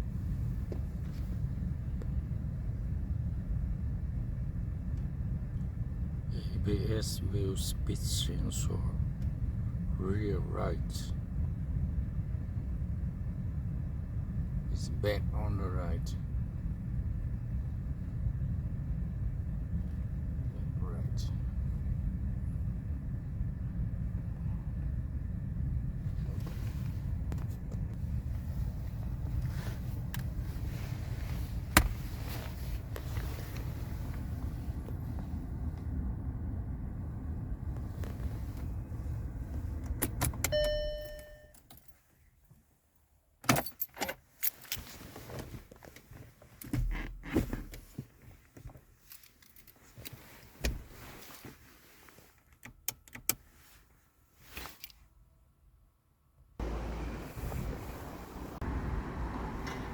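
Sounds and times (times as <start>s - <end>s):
car engine idling: 0.0s - 41.4s, 56.6s - 59.9s
short beep: 40.5s - 41.6s.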